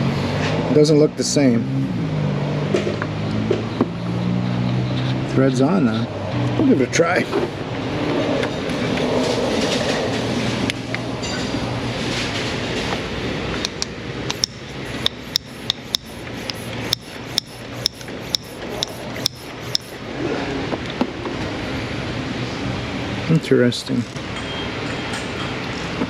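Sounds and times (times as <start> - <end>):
hand pump clicking: 13.6 - 19.9.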